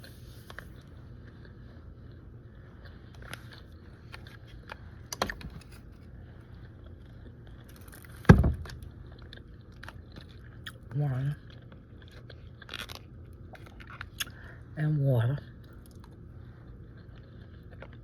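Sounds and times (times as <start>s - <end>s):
heavy thump: 8.3s - 8.8s.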